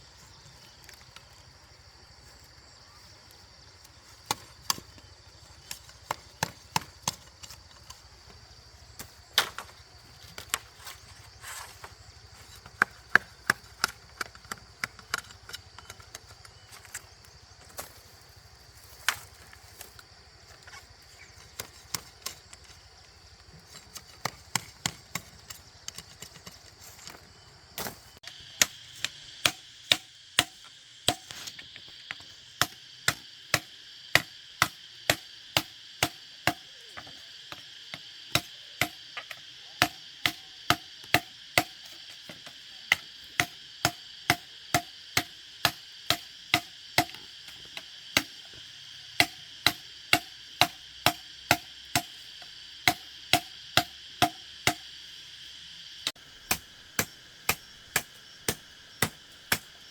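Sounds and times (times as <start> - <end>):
insects droning: 0.0 - 59.9
blade chopping wood: 4.2 - 5.0, 5.6 - 8.0, 9.0 - 10.9, 23.8 - 27.2, 27.8 - 31.6, 32.2 - 48.6, 49.2 - 54.9, 56.1 - 59.8.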